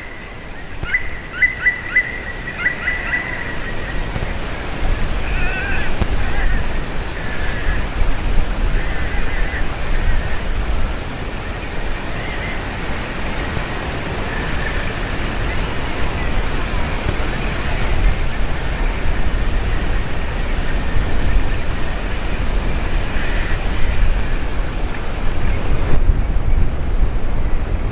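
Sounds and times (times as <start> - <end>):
distant woodpecker calls: 0.0 - 25.8
wind rushing on microphone: 0.0 - 27.9.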